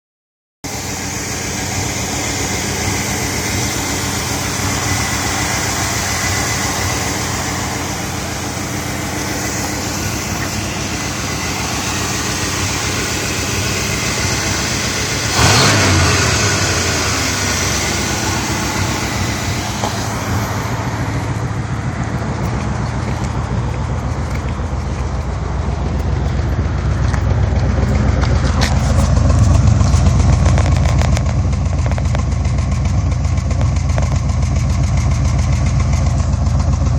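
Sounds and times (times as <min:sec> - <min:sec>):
car engine rough idle: 0:00.6 - 0:36.9
engine throttle burst: 0:00.7 - 0:22.2.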